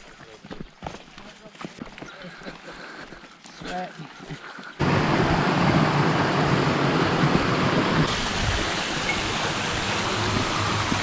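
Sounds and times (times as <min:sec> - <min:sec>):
falling water rushing: 0:04.8 - 0:11.0.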